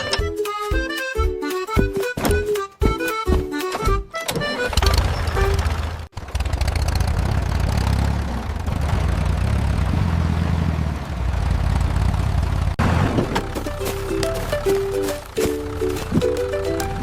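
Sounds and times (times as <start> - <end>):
engine running at low pitch: 4.6 - 17.0.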